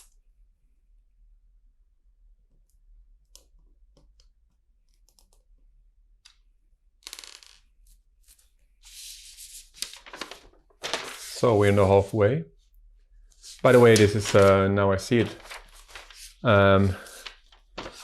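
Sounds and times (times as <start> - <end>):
rustling and crinkling: 9.4 - 11.8, 13.4 - 18.0.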